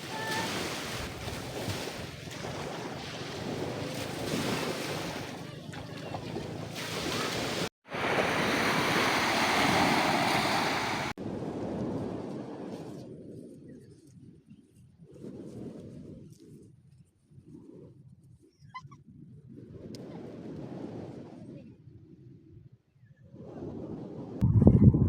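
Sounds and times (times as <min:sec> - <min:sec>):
ocean waves washing onto beach: 0:00.0 - 0:12.8
wind buffeting microphone: 0:19.0 - 0:25.0.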